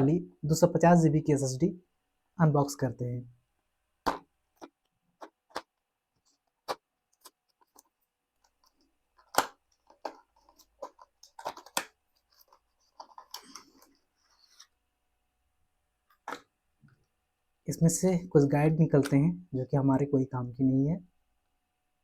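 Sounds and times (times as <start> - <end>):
packaging clicks and taps: 4.0 - 14.0.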